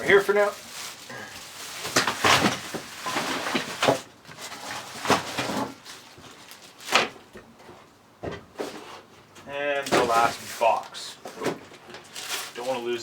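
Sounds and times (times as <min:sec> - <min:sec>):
boxes knocking and scraping: 0:01.8 - 0:06.3, 0:09.8 - 0:12.5.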